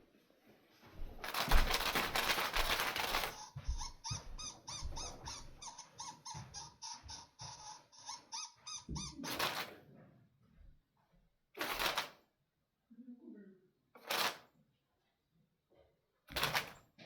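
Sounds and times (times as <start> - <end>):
noisy rustling: 1.0 - 5.0
electronic toy squeaky chirps: 3.2 - 9.6.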